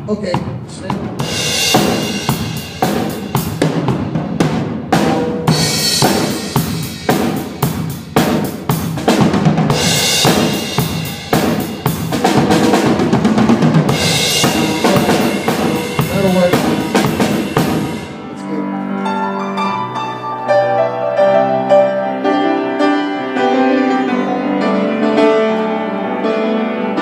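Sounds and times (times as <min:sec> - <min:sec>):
drum kit playing: 0:00.0 - 0:18.4.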